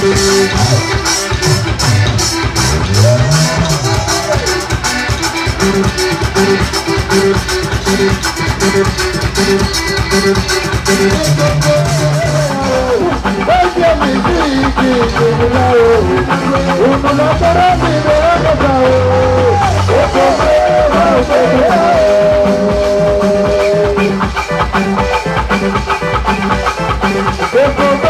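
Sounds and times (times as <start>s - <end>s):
upbeat band music: 0.0s - 28.0s.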